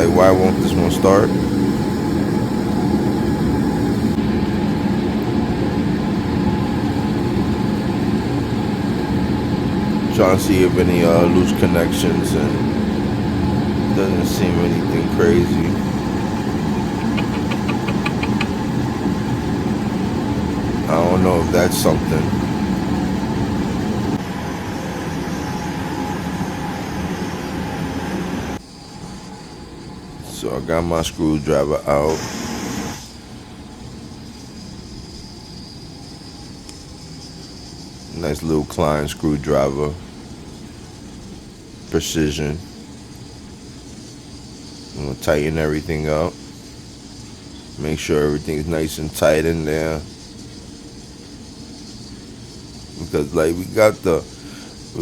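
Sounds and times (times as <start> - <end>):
boiler burner droning: 0.0 - 55.0
quiet hiss: 28.6 - 55.0.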